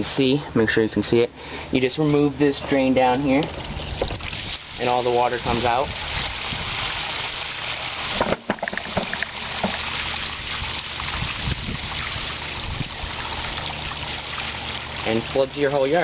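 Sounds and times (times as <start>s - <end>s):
water gushing from drain port: 3.4s - 16.0s
handling clicks and knocks: 8.3s - 9.8s.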